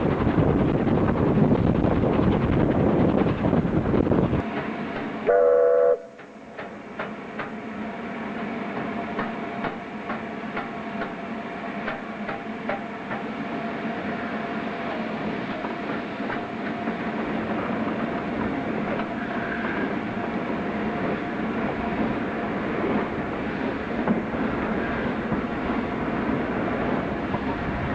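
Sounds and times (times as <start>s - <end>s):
train wheels clacking over rail joints: 4.3s - 5.2s, 6.1s - 7.6s, 8.7s - 13.5s, 14.8s - 27.9s
steam locomotive whistle blast: 5.2s - 6.2s.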